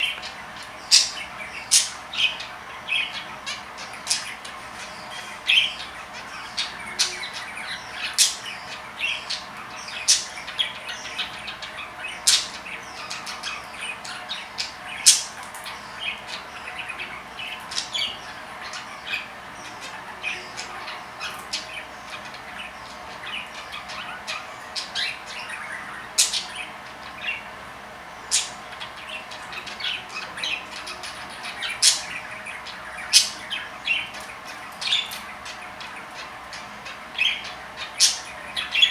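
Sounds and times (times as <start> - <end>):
budgerigars chattering: 0.0 - 38.9
budgerigar squawks: 28.2 - 38.9.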